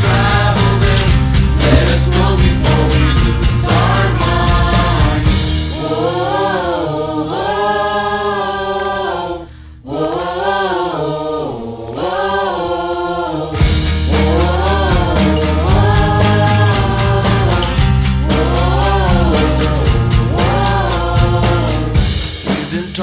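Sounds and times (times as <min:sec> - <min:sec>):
drum beat: 0:00.0 - 0:05.5
choir-like vocals holding notes: 0:00.0 - 0:22.1.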